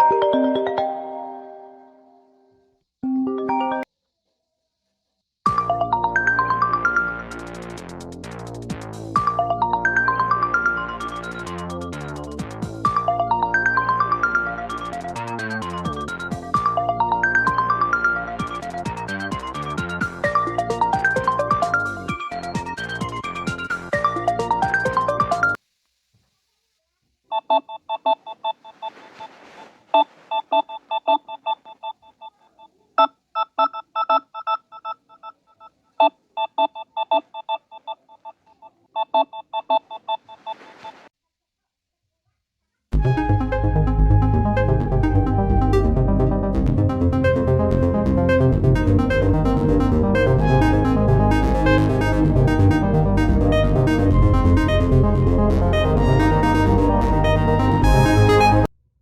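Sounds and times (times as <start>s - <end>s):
smartphone ringtones: 0.0s - 1.9s, 3.0s - 3.8s, 12.9s - 22.6s, 30.0s - 32.4s, 33.0s - 38.3s
steady low bass: 43.0s - 58.7s.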